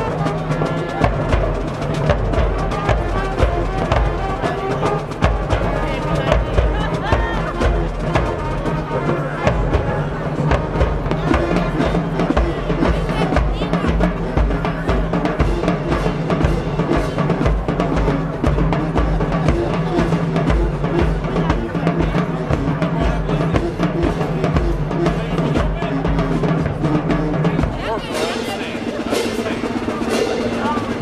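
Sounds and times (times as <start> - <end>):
marching band playing: 0.0 - 31.0.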